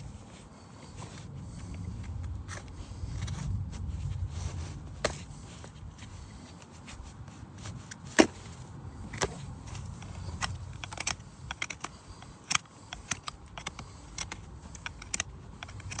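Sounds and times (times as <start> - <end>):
hoof tools clicking and snapping: 0.8 - 3.6, 5.0 - 16.0.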